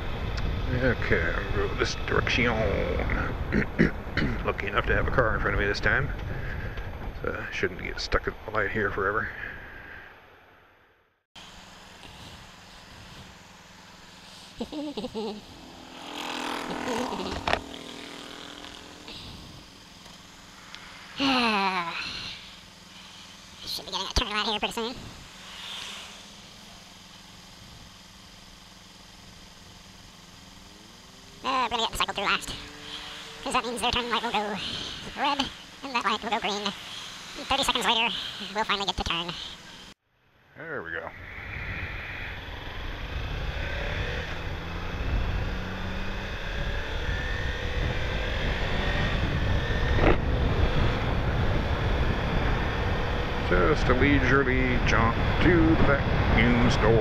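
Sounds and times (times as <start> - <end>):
motorcycle engine accelerating: 0.0 - 10.1, 11.4 - 40.0, 40.6 - 57.0
motorcycle engine idling: 11.4 - 35.8
brief hiss: 25.2 - 26.5
wind noise: 45.0 - 54.0.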